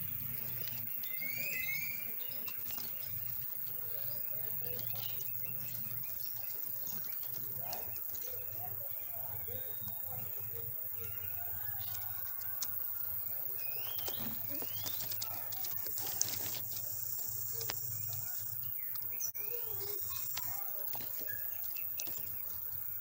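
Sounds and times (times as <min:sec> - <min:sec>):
young bird chirping: 0:00.1 - 0:12.1, 0:13.5 - 0:22.5
small clicks: 0:11.8 - 0:12.8, 0:13.8 - 0:19.1, 0:19.7 - 0:22.7.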